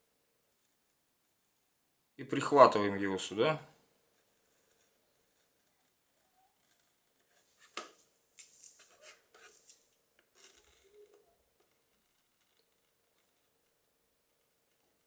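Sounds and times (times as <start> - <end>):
plastic scraping and rubbing: 4.3 - 15.0.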